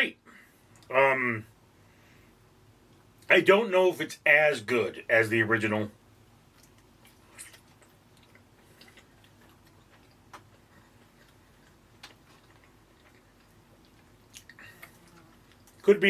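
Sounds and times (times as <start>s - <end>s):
chewing mouth clicks and smacks: 6.5s - 15.8s.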